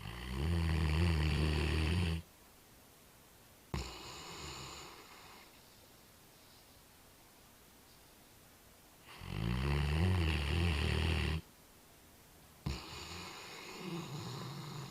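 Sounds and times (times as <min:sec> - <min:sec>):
dog snoring: 0:00.0 - 0:02.2, 0:03.7 - 0:05.6, 0:09.0 - 0:11.4, 0:12.6 - 0:14.9.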